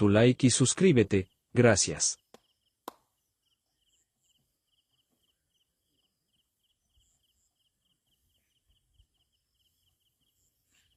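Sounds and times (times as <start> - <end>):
faint cricket chirping: 2.4 - 10.9.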